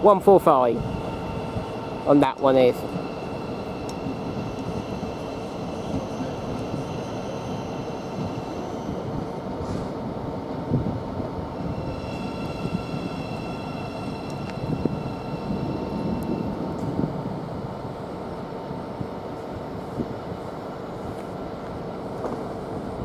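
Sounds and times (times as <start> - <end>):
train wheels rumbling on rail: 0.0 - 23.0
faint high whine: 0.5 - 9.4, 11.5 - 17.1.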